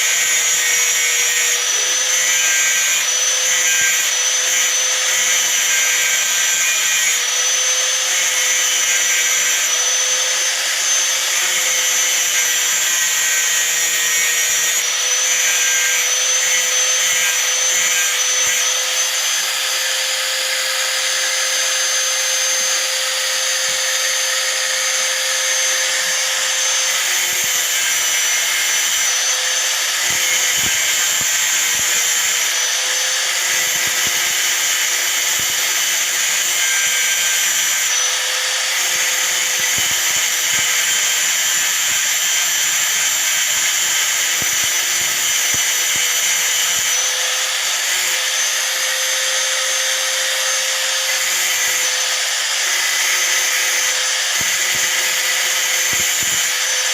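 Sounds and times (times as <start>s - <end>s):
angle grinder grinding steel: 0.0s - 56.9s.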